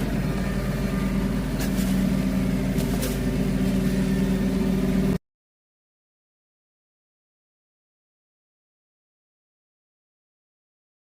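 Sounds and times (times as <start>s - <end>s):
engine running steadily: 0.0s - 5.2s.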